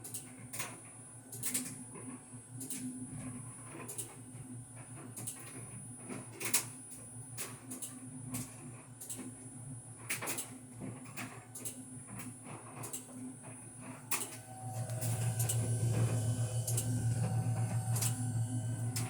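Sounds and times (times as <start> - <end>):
clothes dryer humming: 13.8 - 19.0.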